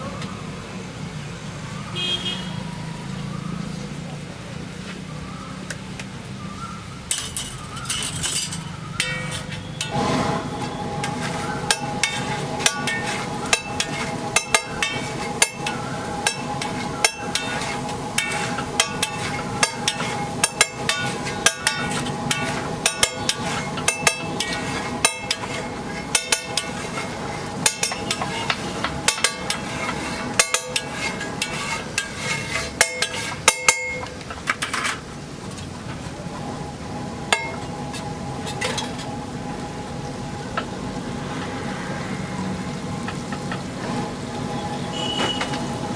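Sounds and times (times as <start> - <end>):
metal utensils clinking on pan: 7.1 - 35.1, 37.3 - 39.1.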